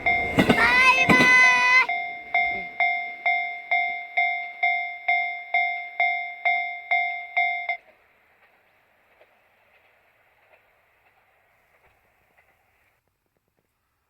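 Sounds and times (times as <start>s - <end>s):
level crossing warning bell: 0.0s - 7.9s.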